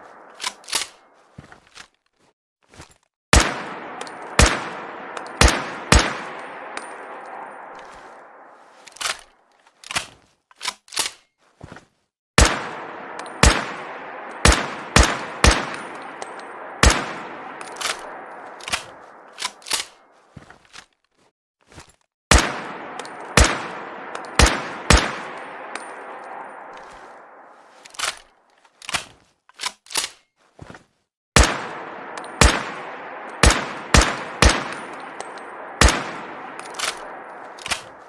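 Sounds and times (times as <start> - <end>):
metallic clicks of rifle action: 0.2 - 1.0, 8.7 - 11.3, 17.6 - 20.0, 27.7 - 30.3, 36.6 - 38.0
rifle gunshots echoing: 3.3 - 9.2, 12.4 - 20.0, 22.3 - 28.2, 31.4 - 38.0.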